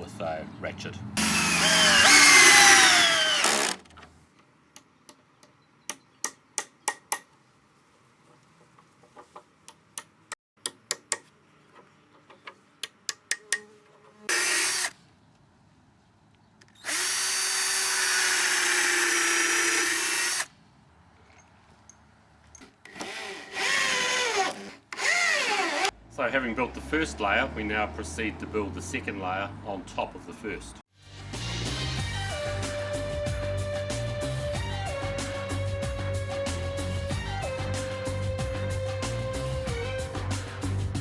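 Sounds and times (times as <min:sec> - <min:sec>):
cordless drill driving screws: 0:01.2 - 0:03.9, 0:14.3 - 0:15.0, 0:16.8 - 0:20.5, 0:22.8 - 0:25.9.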